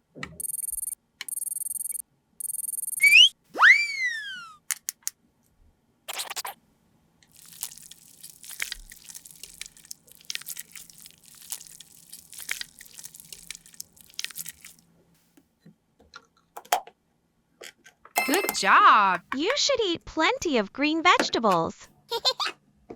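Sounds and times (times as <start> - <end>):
sharp ticks: 0.4 - 3.1
toy food crunching and scratching: 6.1 - 6.6, 7.2 - 14.9.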